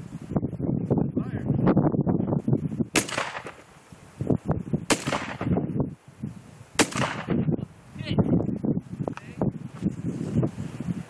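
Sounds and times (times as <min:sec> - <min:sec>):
shotgun shots: 0:02.9 - 0:03.6, 0:04.9 - 0:05.6, 0:06.8 - 0:07.5.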